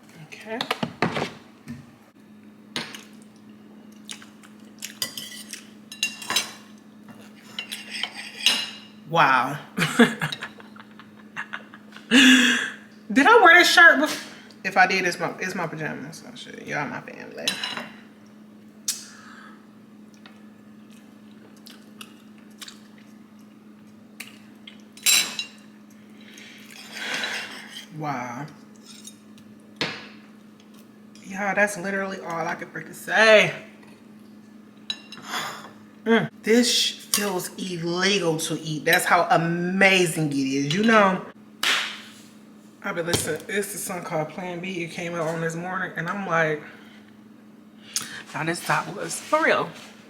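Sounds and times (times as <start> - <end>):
faint steady hum: 0.0 - 50.0
soft chewing: 20.1 - 25.0.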